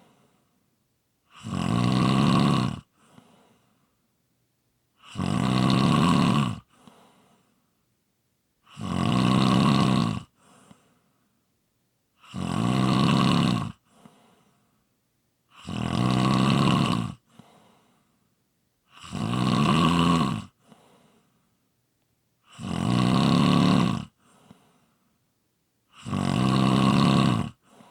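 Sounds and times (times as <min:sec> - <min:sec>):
person snoring: 0:01.3 - 0:03.3, 0:05.0 - 0:07.0, 0:08.6 - 0:10.4, 0:12.2 - 0:14.2, 0:15.5 - 0:17.5, 0:18.9 - 0:20.9, 0:22.4 - 0:24.8, 0:25.9 - 0:27.9.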